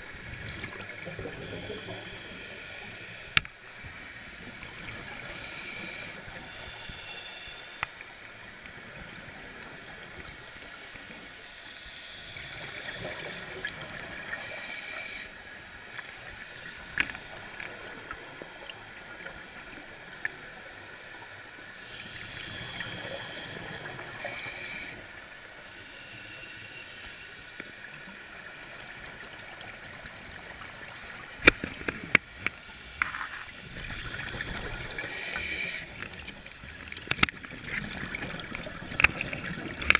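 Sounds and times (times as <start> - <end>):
underwater regulator breathing: 0.6 - 3.4, 5.1 - 8.0, 10.5 - 15.4, 21.7 - 27.9, 32.6 - 36.4.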